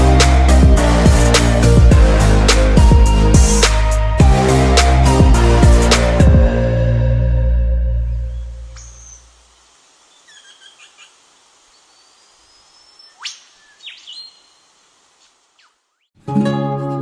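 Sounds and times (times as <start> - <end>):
background music: 0.0 - 8.8, 16.2 - 17.0
birds chirping: 8.0 - 16.2
thin drawn-out bird whistle: 8.3 - 9.3, 10.1 - 11.1, 11.8 - 14.6
whip-like upward bird call: 13.0 - 14.3.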